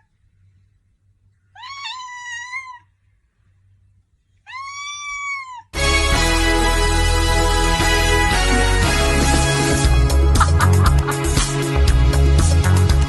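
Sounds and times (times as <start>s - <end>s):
cat meowing: 1.5s - 2.9s, 4.4s - 5.8s.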